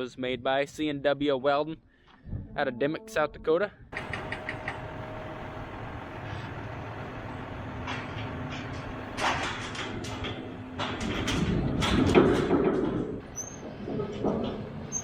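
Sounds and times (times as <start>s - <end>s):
vehicle running: 4.0s - 15.0s
metal rattles and clanks: 7.8s - 15.0s.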